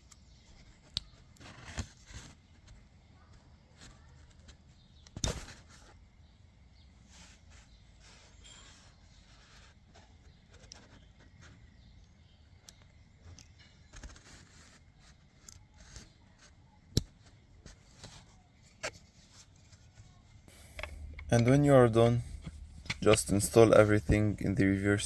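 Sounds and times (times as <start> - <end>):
light rubbing and scraping: 7.1 - 11.8, 13.2 - 16.6, 17.3 - 25.0.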